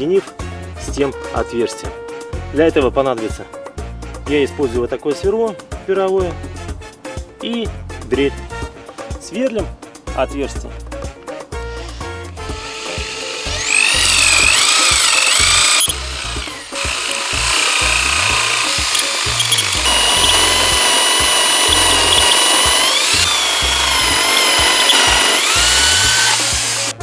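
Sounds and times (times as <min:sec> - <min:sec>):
power drill boring into wood: 0:12.5 - 0:27.0.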